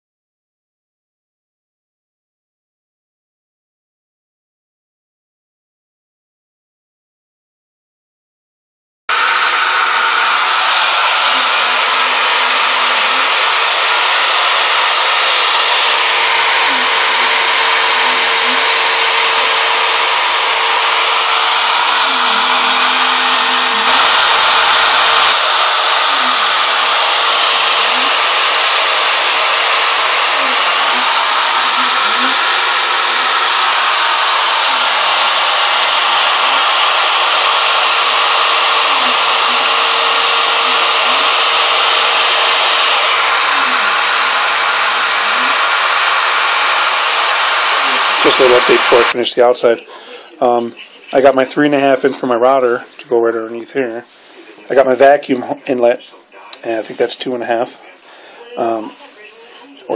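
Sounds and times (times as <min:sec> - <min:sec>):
router spindle whirring: 0:09.1 - 0:49.2.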